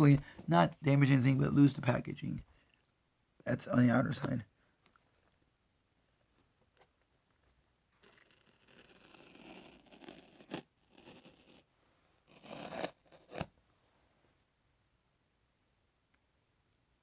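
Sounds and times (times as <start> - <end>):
knife scraping packing tape: 8.0 - 11.6, 12.3 - 13.5.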